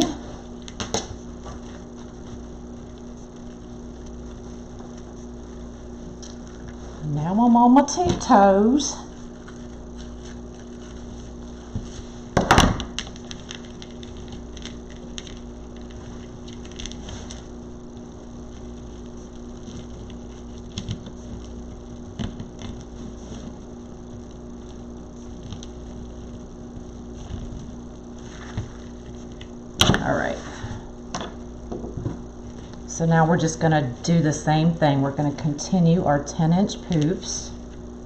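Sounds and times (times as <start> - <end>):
low electrical hum: 0.0 - 38.0
ribbon rustling: 9.1 - 17.7.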